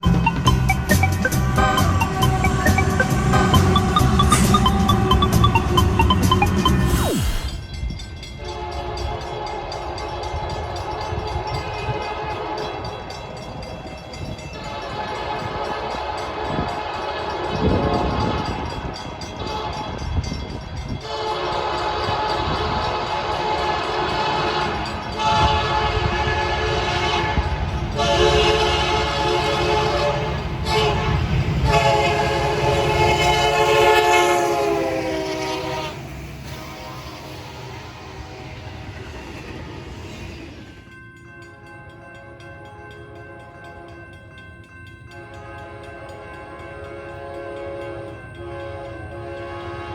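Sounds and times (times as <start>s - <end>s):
locomotive air horn chord: 0.0s - 6.7s, 8.4s - 12.7s, 21.0s - 38.8s, 45.1s - 49.9s
intro music: 0.0s - 7.8s
passing train rumble: 0.0s - 49.9s.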